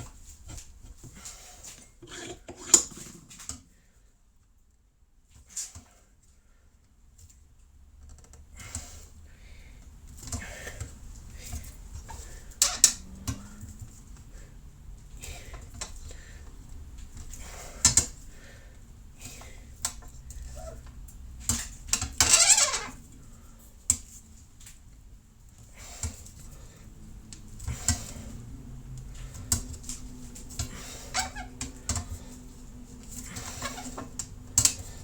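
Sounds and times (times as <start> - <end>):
nylon piece scraping metal: 1.6 - 3.5, 22.2 - 23.1.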